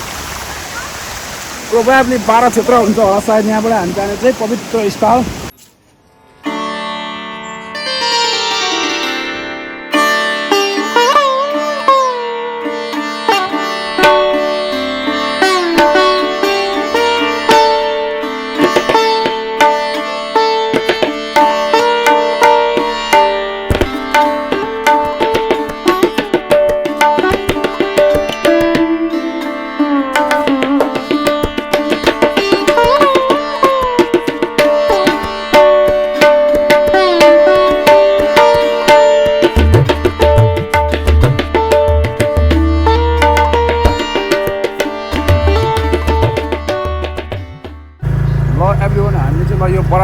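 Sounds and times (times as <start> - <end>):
sitar melody over drone: 6.0 - 26.3, 27.0 - 40.9, 42.6 - 50.0
tabla strokes: 14.0 - 14.6, 15.4 - 48.5.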